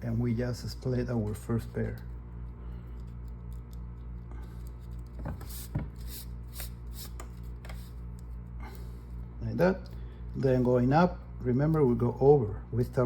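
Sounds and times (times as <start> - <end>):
steady low hum: 0.0 - 13.0
cord rubbing and rustling: 1.2 - 9.3.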